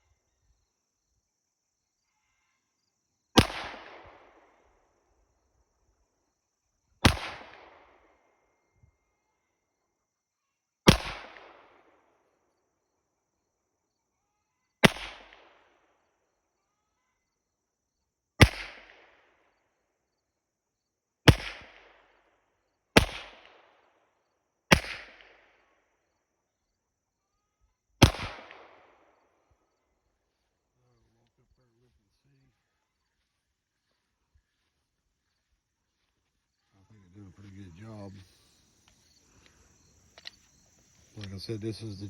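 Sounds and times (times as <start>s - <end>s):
pistol shots with echo: 3.4s - 4.6s, 7.0s - 8.0s, 10.9s - 12.0s, 14.8s - 15.8s, 18.4s - 19.2s, 21.3s - 22.0s, 23.0s - 23.8s, 24.7s - 25.4s, 28.0s - 29.2s.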